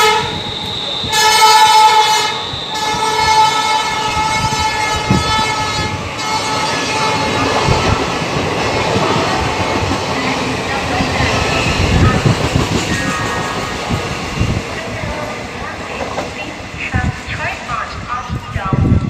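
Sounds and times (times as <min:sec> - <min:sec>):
locomotive horn blasts: 0:00.0 - 0:07.4
train running past: 0:00.0 - 0:19.0.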